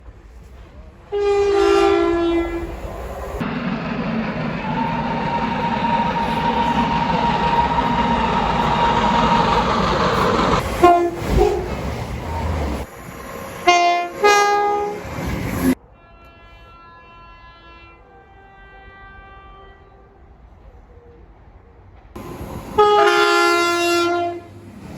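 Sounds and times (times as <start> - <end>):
train rumbling over rails: 0.0 - 16.8, 17.6 - 24.9
train horn: 1.1 - 2.8, 10.8 - 11.7, 13.6 - 15.1, 15.8 - 20.5, 22.7 - 24.6
high wheel squeal: 4.6 - 13.8.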